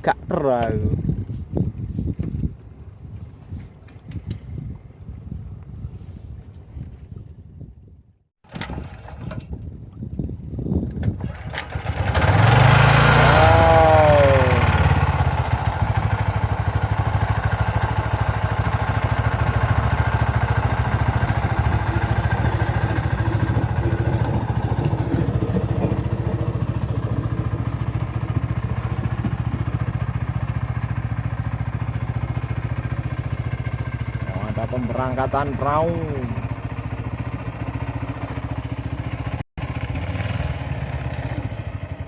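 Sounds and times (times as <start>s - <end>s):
boat engine running: 11.1s - 42.0s.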